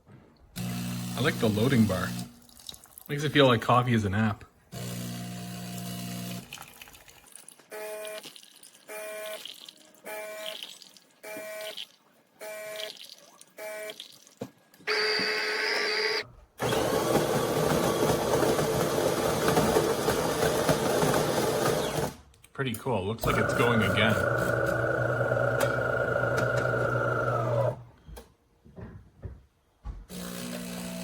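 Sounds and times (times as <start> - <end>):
coffee grinder grinding beans: 14.9 - 22.0, 23.2 - 27.8
espresso machine humming: 14.9 - 22.1, 23.2 - 27.8.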